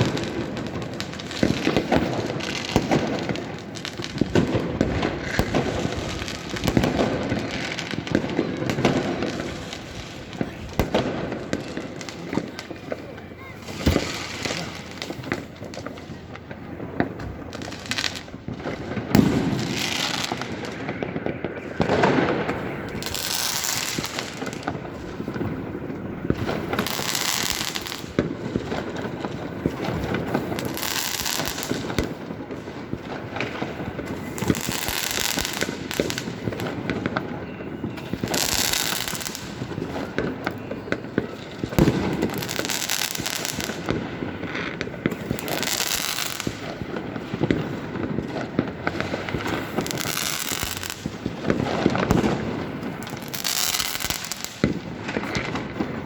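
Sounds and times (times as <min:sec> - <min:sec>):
fireworks hissing bursts: 0:00.0 - 0:16.3, 0:17.4 - 0:28.2
firecrackers crackling: 0:00.0 - 0:56.0.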